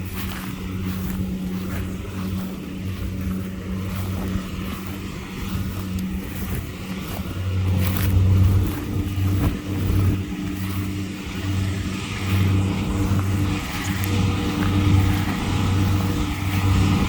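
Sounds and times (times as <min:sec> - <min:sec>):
diesel engine humming: 0:00.0 - 0:17.0.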